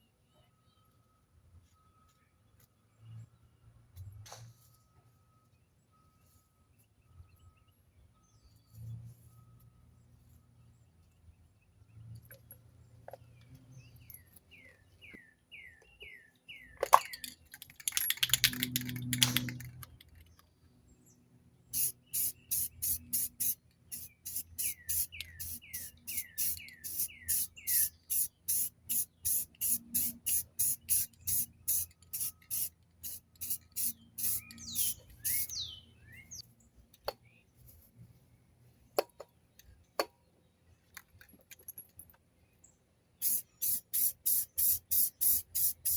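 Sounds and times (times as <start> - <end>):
bird chirping: 10.6 - 17.5, 18.2 - 37.6, 42.4 - 45.9
spray paint bursts: 21.8 - 35.7, 43.2 - 45.9.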